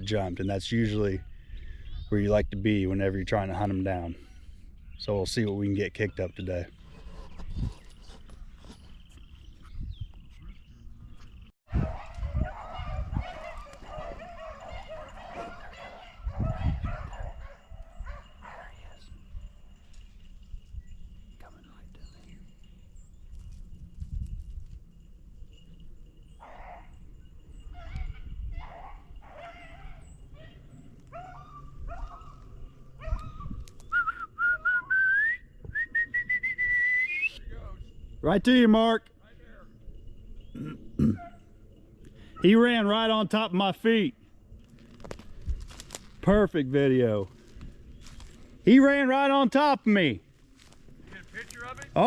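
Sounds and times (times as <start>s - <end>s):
dogs baying together: 11.8s - 18.7s, 40.6s - 41.5s
beagles baying: 11.8s - 19.2s, 26.4s - 33.7s, 40.5s - 43.1s
loud whistling: 33.9s - 37.5s.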